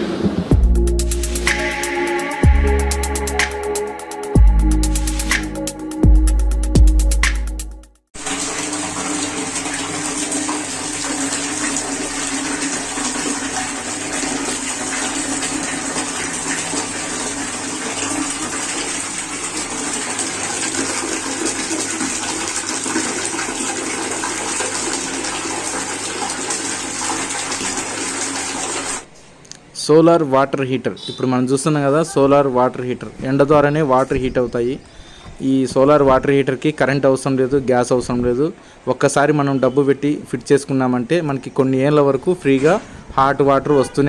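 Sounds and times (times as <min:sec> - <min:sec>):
water running and splashing: 0:08.2 - 0:29.1.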